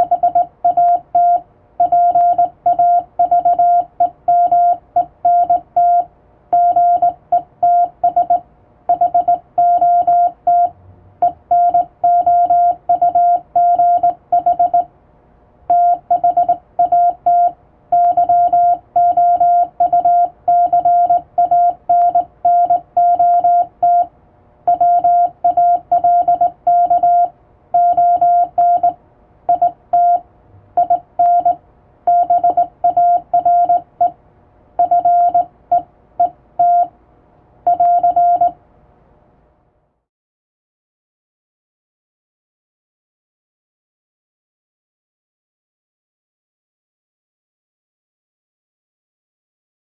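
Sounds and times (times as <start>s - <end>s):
morse code beeps: 0.0s - 14.9s, 15.7s - 24.1s, 24.7s - 30.2s, 30.8s - 34.2s, 34.8s - 36.9s, 37.7s - 38.6s.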